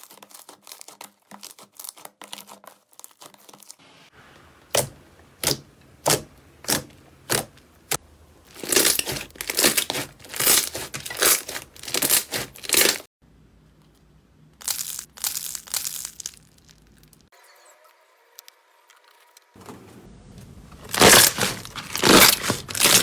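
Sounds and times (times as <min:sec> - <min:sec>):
slime popping and crackling: 0:04.7 - 0:13.1, 0:14.6 - 0:17.3, 0:20.8 - 0:23.0.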